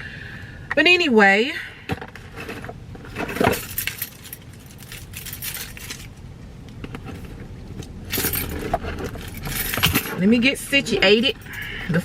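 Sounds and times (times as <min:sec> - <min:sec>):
belongings handled with clinks: 0:03.1 - 0:06.2, 0:11.1 - 0:12.0.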